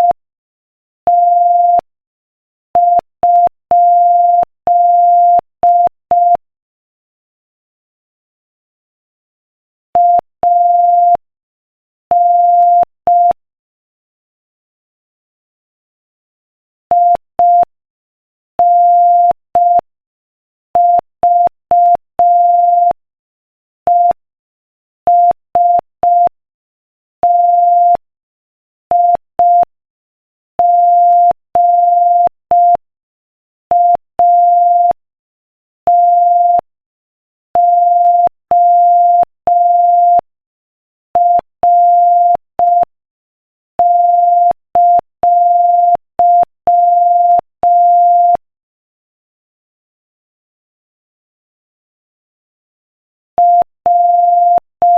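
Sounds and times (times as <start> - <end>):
morse code beeping: 37.6 - 40.2, 41.2 - 42.9, 43.8 - 48.4, 53.4 - 54.9.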